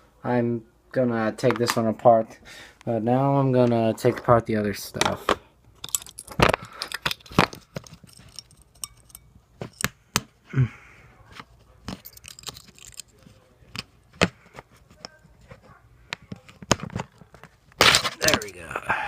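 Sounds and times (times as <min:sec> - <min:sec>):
metal parts and tool clicking: 0:05.8 - 0:09.9, 0:11.9 - 0:13.9, 0:17.8 - 0:18.6.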